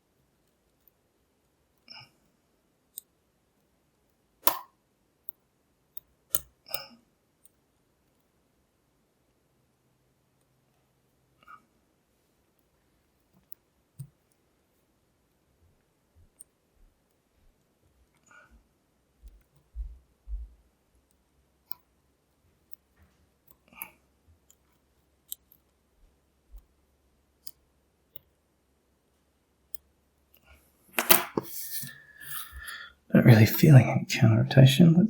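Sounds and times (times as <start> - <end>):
lock pick clicking in padlock: 4.4 - 4.7.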